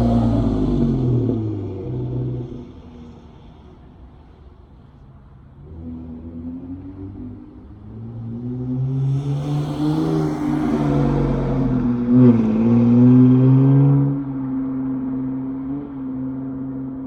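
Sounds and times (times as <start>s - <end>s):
car engine accelerating hard: 0.0s - 2.8s, 5.7s - 14.6s.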